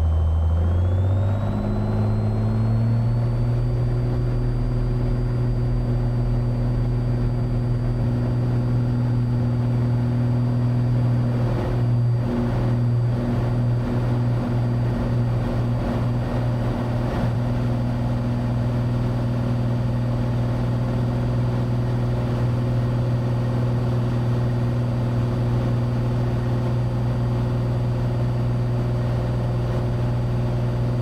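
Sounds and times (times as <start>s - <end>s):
airplane engine and propeller: 0.0s - 31.0s.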